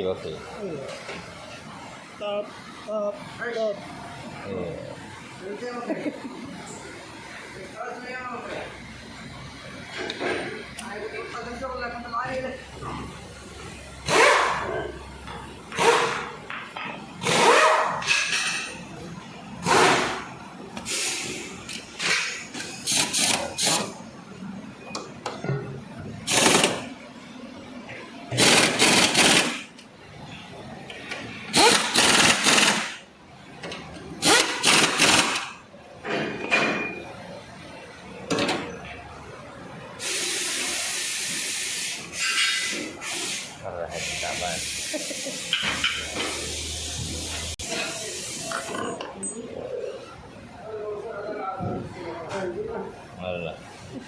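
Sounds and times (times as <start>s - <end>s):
pneumatic impact wrench bursts: 17.2s - 17.6s, 19.6s - 20.2s, 20.8s - 24.0s, 26.2s - 26.9s, 28.3s - 29.7s, 31.5s - 33.0s, 34.2s - 35.6s, 40.0s - 48.8s
air hissing: 20.8s - 21.6s, 40.0s - 48.7s.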